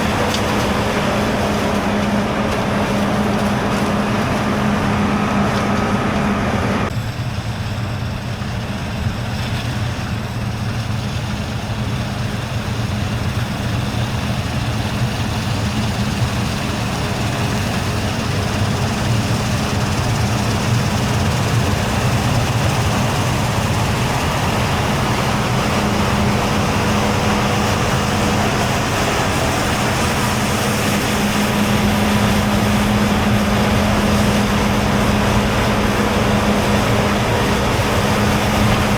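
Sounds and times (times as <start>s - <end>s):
heavy diesel machinery drone: 0.0s - 38.9s.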